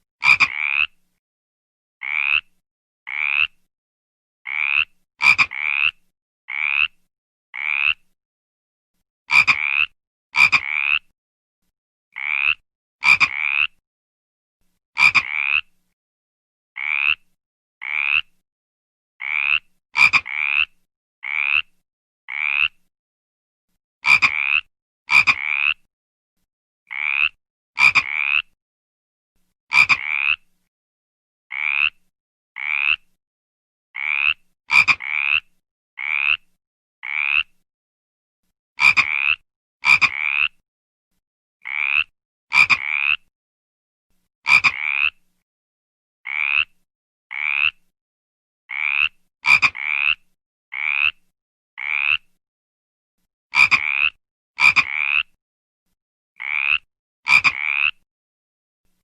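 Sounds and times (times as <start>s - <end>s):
frog croaking: 0.2s - 1.0s, 2.0s - 2.5s, 3.1s - 3.6s, 4.5s - 7.0s, 7.6s - 8.0s, 9.3s - 11.0s, 12.2s - 13.8s, 15.0s - 15.7s, 16.8s - 17.2s, 17.8s - 18.3s, 19.2s - 21.7s, 22.3s - 22.8s, 24.0s - 25.8s, 26.9s - 28.5s, 29.7s - 30.4s, 31.5s - 32.0s, 32.6s - 33.1s, 34.0s - 36.4s, 37.0s - 37.5s, 38.8s - 40.5s, 41.6s - 43.2s, 44.5s - 45.1s, 46.3s - 46.7s, 47.3s - 47.8s, 48.7s - 50.1s, 50.7s - 51.2s, 51.8s - 52.3s, 53.6s - 55.3s, 56.4s - 58.0s.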